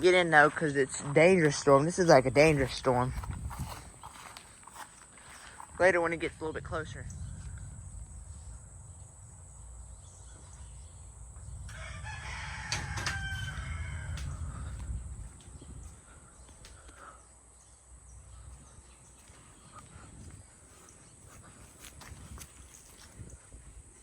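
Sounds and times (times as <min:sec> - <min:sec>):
wind rumble on microphone: 0:00.0 - 0:17.0, 0:18.1 - 0:24.0
rooster crowing: 0:11.5 - 0:15.0.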